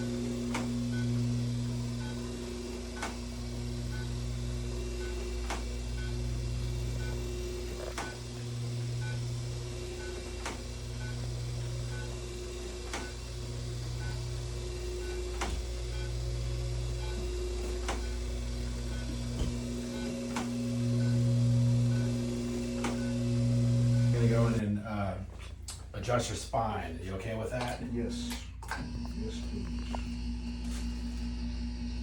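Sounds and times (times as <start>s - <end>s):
laser unit humming: 0.0s - 32.0s.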